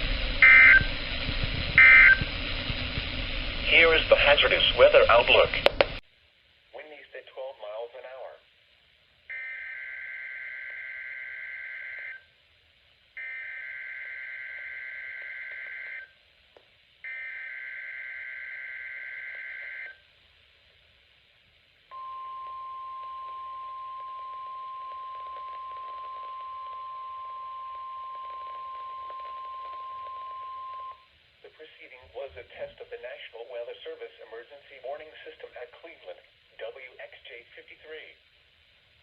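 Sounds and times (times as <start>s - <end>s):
steady alarm tone: 0.0s - 5.6s, 9.3s - 12.3s, 13.2s - 16.2s, 17.0s - 20.0s, 21.9s - 31.1s
warbling digital data bursts: 0.0s - 5.6s.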